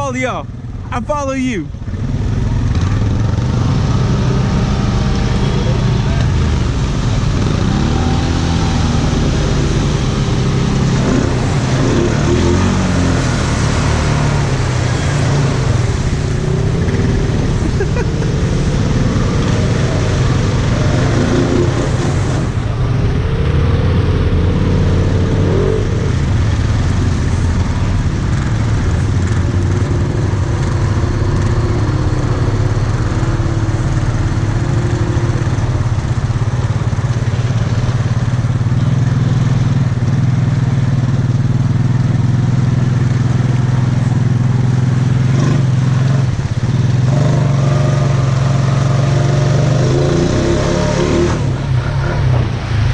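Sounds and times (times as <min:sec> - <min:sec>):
atv engine running: 0:01.7 - 0:52.9.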